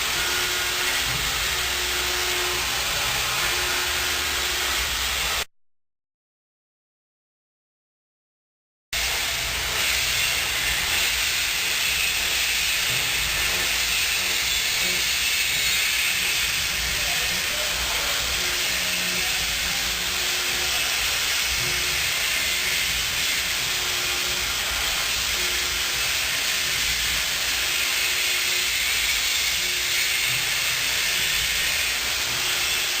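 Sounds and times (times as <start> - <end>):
machine milling steel hiss: 9.0 - 33.0.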